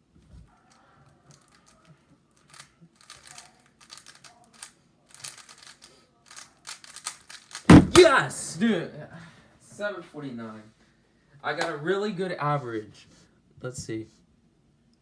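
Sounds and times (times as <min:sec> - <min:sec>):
puzzle cube clicking: 0:02.4 - 0:08.1.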